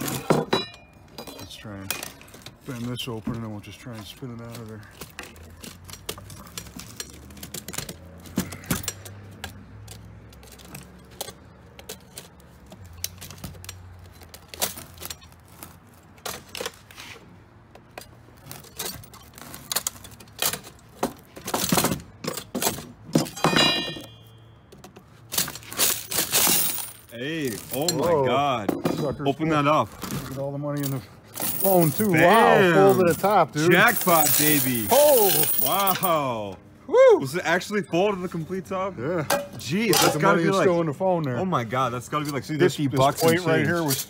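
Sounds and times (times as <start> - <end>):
metallic ring: 0.4 - 2.1, 23.3 - 24.6
coins jingling: 25.4 - 28.2, 30.8 - 36.2.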